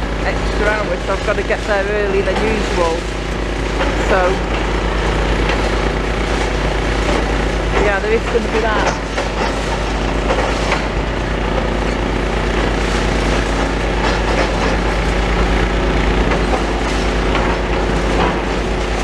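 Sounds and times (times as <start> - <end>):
excavator diesel engine running: 0.0 - 19.0
knocks and clatter of demolition: 0.0 - 19.0.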